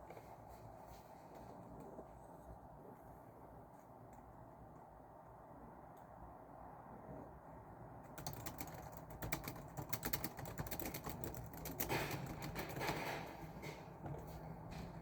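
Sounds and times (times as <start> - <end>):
typing on computer keyboard: 8.0 - 13.3.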